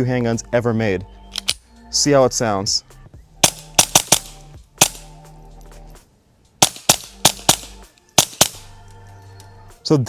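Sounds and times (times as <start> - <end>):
suppressed pistol shots: 1.3 - 1.6, 3.4 - 5.2, 6.6 - 8.9.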